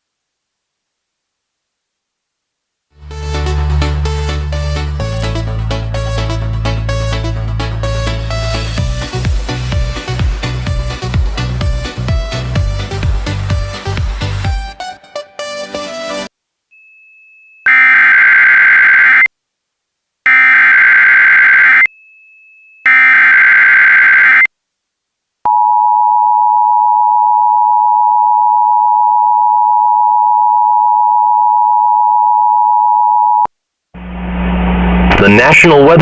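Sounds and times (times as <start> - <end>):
screeching digital data bursts: 17.7 - 19.3, 20.6 - 21.9, 22.9 - 24.5.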